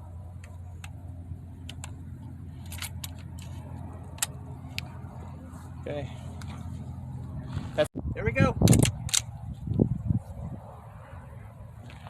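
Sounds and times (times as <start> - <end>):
steady low hum: 0.0 - 12.0
cartridges clicking into rifle magazine: 2.6 - 4.3, 8.6 - 9.3.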